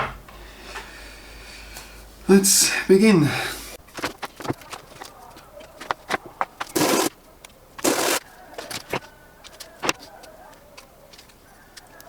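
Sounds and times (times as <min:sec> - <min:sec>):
sandpaper scraping: 0:06.6 - 0:07.1, 0:07.8 - 0:09.0.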